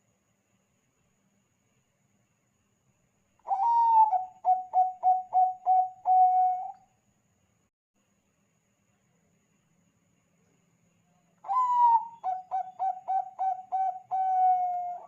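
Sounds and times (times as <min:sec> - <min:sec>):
dove cooing: 0:03.5 - 0:06.8, 0:11.5 - 0:15.0.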